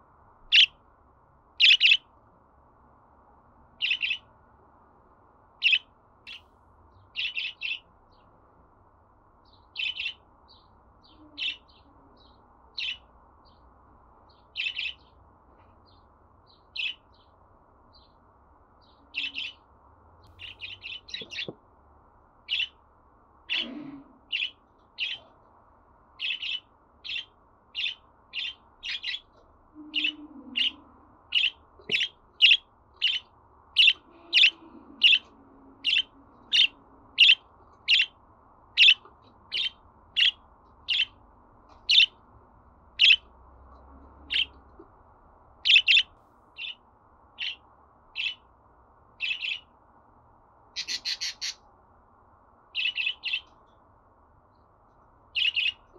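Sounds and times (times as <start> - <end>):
budgerigar chirping: 0.5 - 0.8, 1.6 - 2.1, 3.8 - 4.3, 5.6 - 6.4, 7.1 - 7.9, 9.5 - 13.1, 14.5 - 15.1, 15.9 - 17.0, 19.1 - 19.6, 20.4 - 21.5, 22.5 - 22.8, 23.5 - 25.3, 26.2 - 29.3, 29.9 - 41.2, 41.8 - 42.2, 43.0 - 43.3, 44.3 - 44.6, 45.6 - 46.8, 47.4 - 48.5, 49.2 - 49.7, 50.8 - 51.6, 52.8 - 53.6, 55.4 - 55.9.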